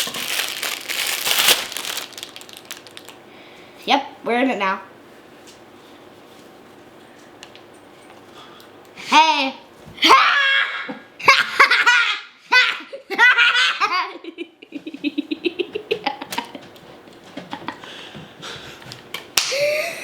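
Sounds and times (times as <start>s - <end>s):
hearty laughter: 11.2s - 16.7s, 17.3s - 18.8s.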